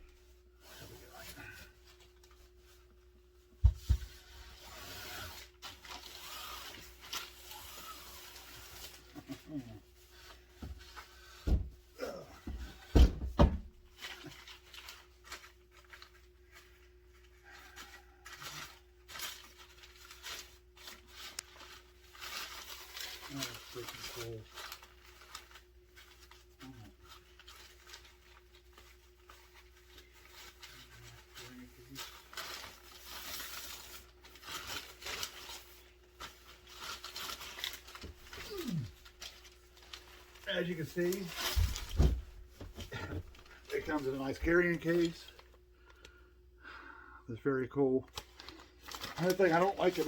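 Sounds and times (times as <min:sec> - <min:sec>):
rustling and scraping of cardboard: 0:10.0 - 0:45.2.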